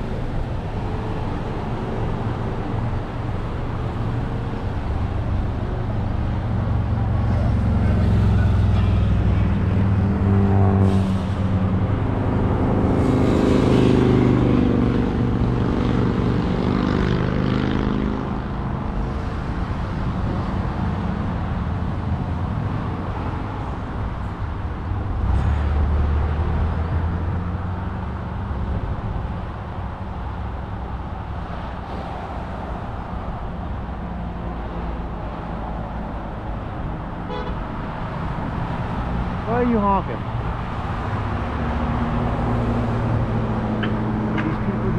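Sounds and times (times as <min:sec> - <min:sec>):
road noise rush: 0:00.0 - 0:44.9
vehicle engine accelerating: 0:40.5 - 0:44.9.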